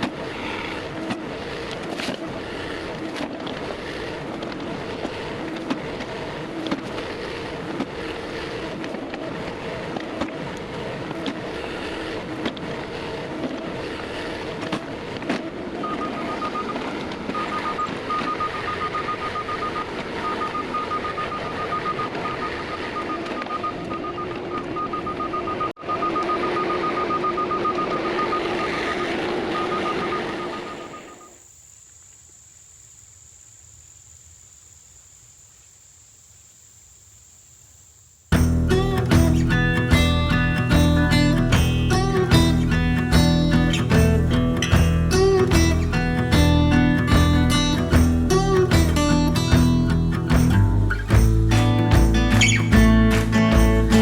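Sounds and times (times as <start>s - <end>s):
tractor engine running: 38.3s - 54.0s.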